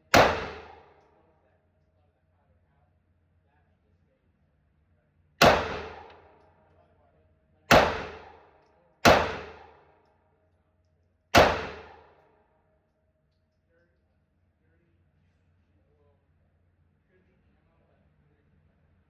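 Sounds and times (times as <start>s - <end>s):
pistol shots echoing: 0.0s - 1.0s, 5.4s - 6.3s, 7.7s - 9.8s, 11.4s - 12.2s.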